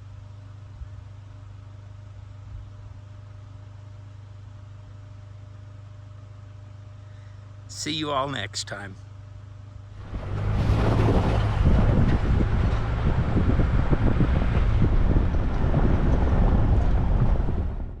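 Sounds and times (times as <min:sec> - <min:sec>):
wind buffeting microphone: 0:10.0 - 0:18.0.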